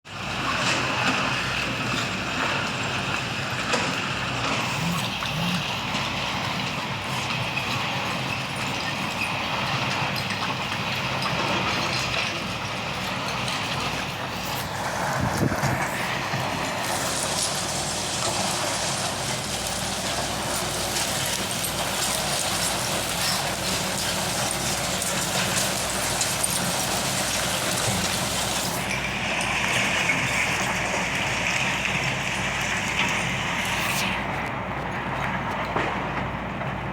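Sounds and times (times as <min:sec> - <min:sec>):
excavator diesel engine: 0:00.3 - 0:36.9
soil and stones rattling: 0:04.0 - 0:34.4
high whine: 0:04.4 - 0:06.6.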